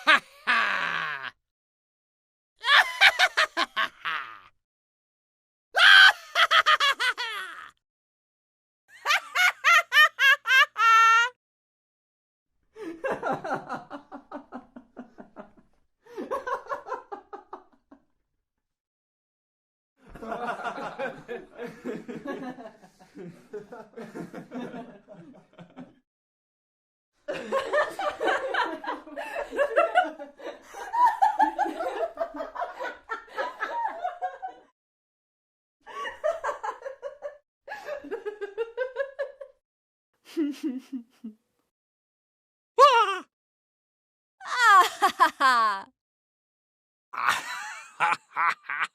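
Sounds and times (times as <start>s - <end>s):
person laughing: 0.0s - 1.4s, 2.6s - 4.5s, 5.8s - 7.8s, 9.1s - 11.4s, 40.3s - 41.4s, 44.4s - 45.9s, 47.2s - 48.9s.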